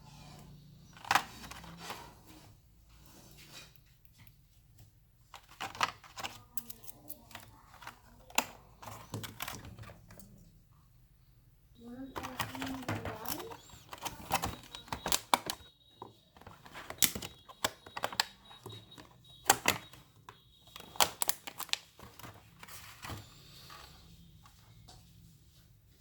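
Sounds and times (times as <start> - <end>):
screwdrivers and case clicking: 0.9 - 1.7, 5.4 - 10.2, 12.2 - 15.7, 16.3 - 22.4.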